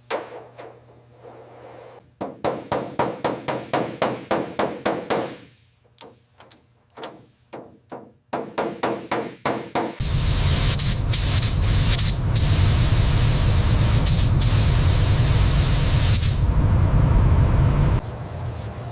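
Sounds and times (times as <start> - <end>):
loud hiss of air or spray: 10.0 - 16.5.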